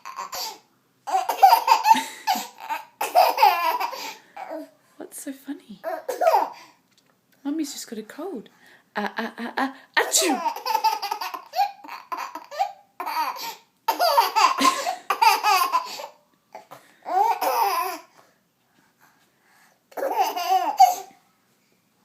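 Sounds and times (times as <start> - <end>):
baby giggling: 0.0 - 4.6, 5.8 - 6.6, 10.2 - 16.1, 17.1 - 18.0, 20.0 - 21.1.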